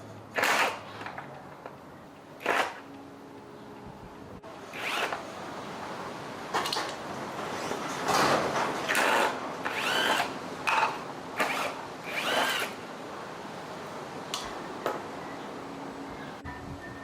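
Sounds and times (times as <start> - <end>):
quiet steady hum: 0.0 - 8.8
small power tool motor: 4.7 - 5.2, 8.9 - 12.8.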